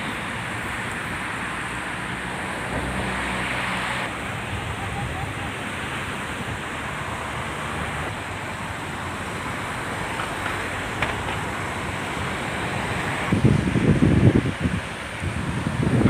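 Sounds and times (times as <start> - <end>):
sea surf rushing: 0.0 - 16.0
wind rumbling on microphone: 0.0 - 16.0.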